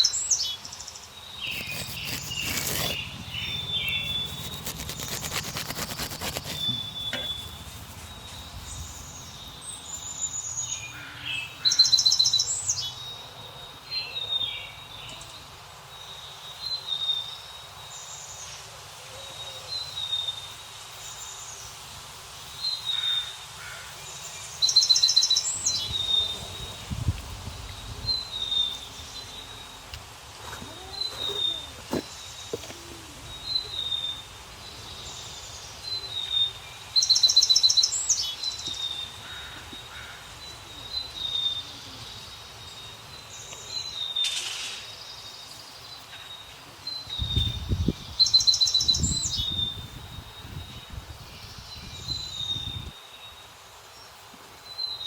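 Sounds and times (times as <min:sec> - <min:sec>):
birds chirping: 0:01.3 - 0:13.6.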